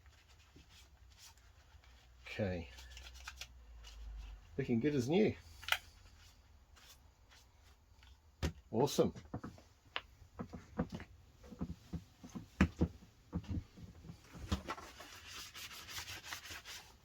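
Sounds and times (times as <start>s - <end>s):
handling clicks and knocks: 8.4s - 14.6s
scratchy rubbing: 14.6s - 17.0s.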